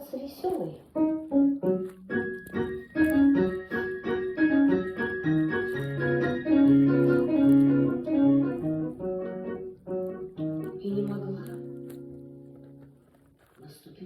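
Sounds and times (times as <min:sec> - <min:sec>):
keyboard music: 0:01.0 - 0:13.2.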